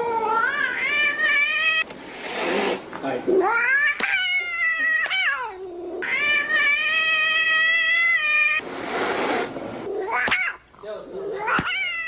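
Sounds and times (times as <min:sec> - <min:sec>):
cat yowling: 0:00.0 - 0:01.9, 0:03.4 - 0:08.6, 0:09.8 - 0:10.6, 0:11.2 - 0:12.0
cat hissing: 0:00.3 - 0:12.0.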